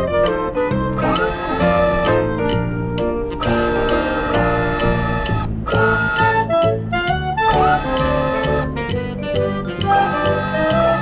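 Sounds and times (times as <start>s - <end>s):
instrumental background music: 0.0s - 11.0s.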